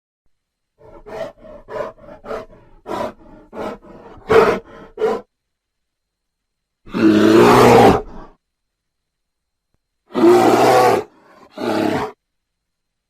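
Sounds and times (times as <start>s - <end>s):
bear growling: 0.8s - 5.3s, 6.9s - 8.4s, 10.1s - 12.2s
bear roaring: 0.8s - 5.3s, 6.9s - 8.4s, 10.1s - 12.2s.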